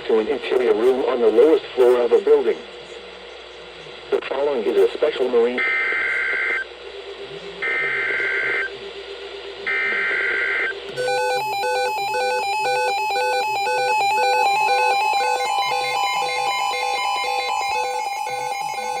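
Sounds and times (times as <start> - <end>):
warbling digital data tones: 5.5 - 19.0
pulsing electronic alert tone: 5.6 - 19.0.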